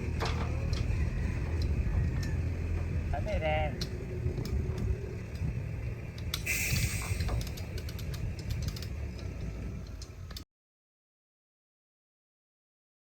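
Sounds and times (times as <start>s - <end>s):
diesel machinery rumbling: 0.0s - 10.4s
short hiss: 6.4s - 7.5s.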